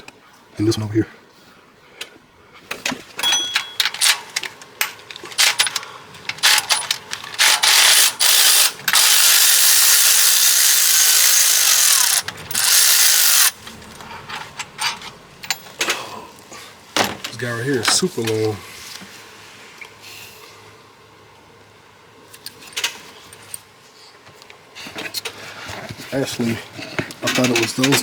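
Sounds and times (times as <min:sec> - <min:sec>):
power ratchet running: 0:05.4 - 0:13.6
ratchet clicking: 0:05.4 - 0:13.6.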